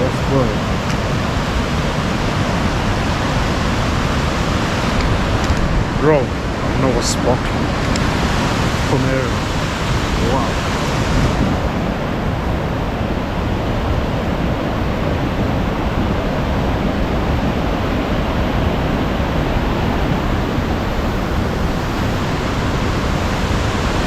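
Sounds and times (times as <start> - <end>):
waterfall roaring: 0.0 - 24.0.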